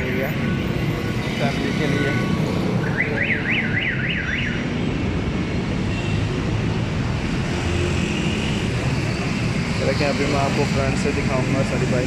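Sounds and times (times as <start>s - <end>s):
street traffic rumble: 0.0s - 12.0s.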